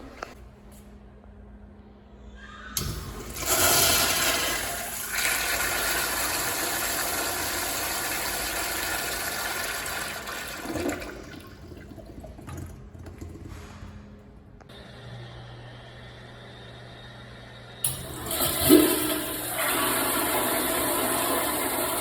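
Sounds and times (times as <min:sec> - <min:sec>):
toilet flushing: 0:02.8 - 0:14.2, 0:17.8 - 0:22.0.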